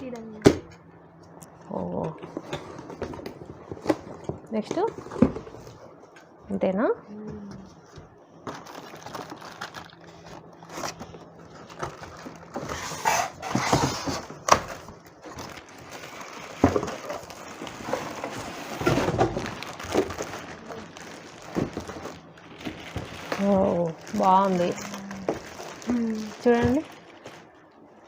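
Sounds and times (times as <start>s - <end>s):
packaging rustling and crinkling: 2.2s - 6.2s, 7.6s - 28.0s.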